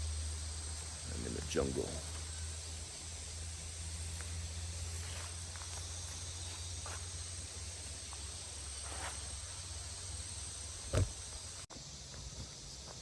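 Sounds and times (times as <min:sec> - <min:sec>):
insects buzzing: 0:00.0 - 0:13.0
low steady hum: 0:00.0 - 0:13.0
sharp thump: 0:10.9 - 0:11.2.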